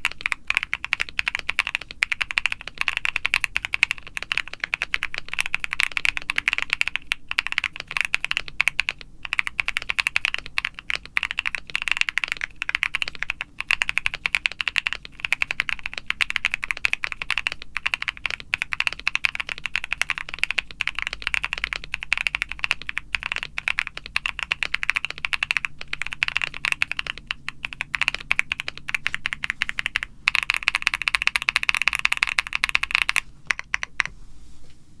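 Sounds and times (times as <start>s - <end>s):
typing on mechanical keyboard: 0.0s - 34.1s.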